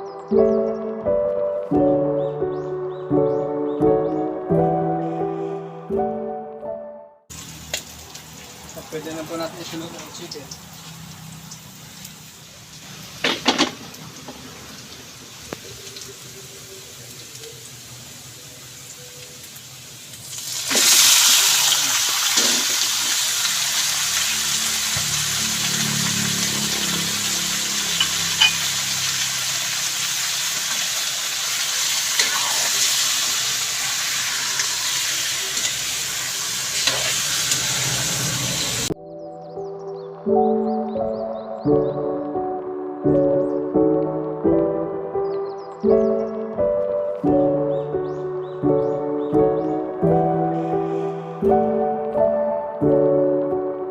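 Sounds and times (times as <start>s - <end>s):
food sizzling in oil: 7.3s - 39.0s
utensil clinking on pan: 28.0s - 28.7s.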